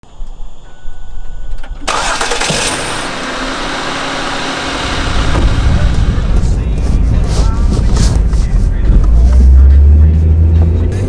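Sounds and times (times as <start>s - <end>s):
engine starting and running: 1.4s - 11.0s.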